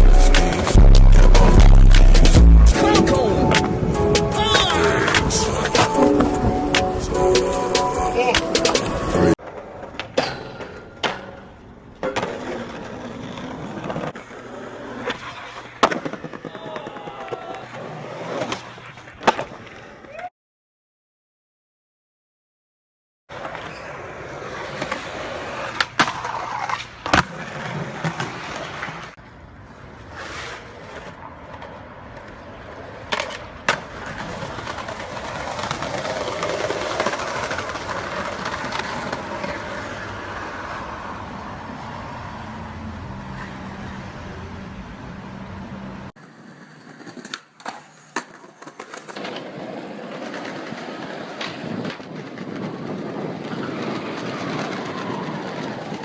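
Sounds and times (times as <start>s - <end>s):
skateboard wheels rolling: 0.0s - 20.3s, 23.3s - 56.0s
skateboard popping and landing: 8.4s - 20.2s, 23.3s - 29.1s, 30.0s - 40.7s, 46.2s - 56.0s.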